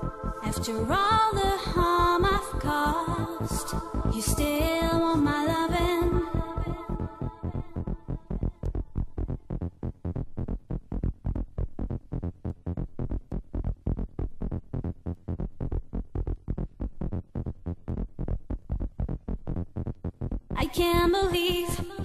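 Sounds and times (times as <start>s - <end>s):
electronic dance music: 0.0s - 1.9s.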